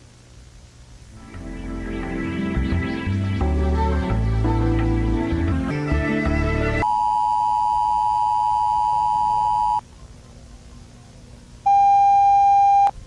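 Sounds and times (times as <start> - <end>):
electronic music: 1.1 - 6.9
two-tone emergency alert signal: 6.8 - 9.8.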